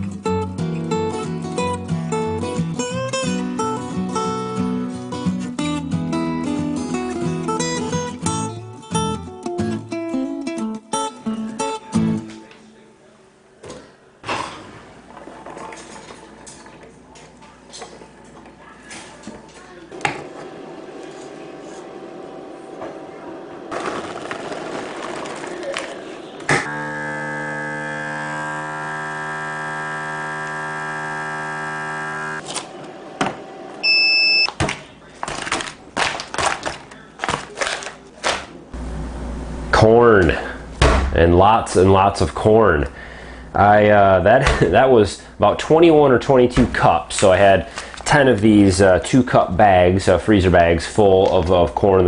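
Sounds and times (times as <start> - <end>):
acoustic guitar music: 0.0 - 12.6
vacuum sealer pump humming: 26.5 - 34.5.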